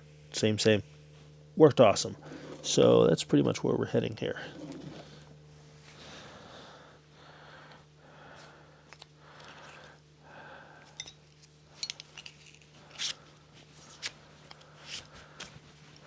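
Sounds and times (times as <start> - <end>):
low electrical hum: 0.0 - 16.0
metallic clicks and clinks: 11.8 - 12.6.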